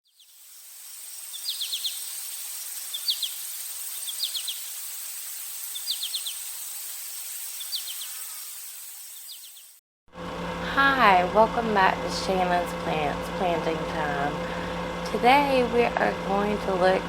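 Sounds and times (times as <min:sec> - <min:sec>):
steady hiss: 0:00.1 - 0:09.8.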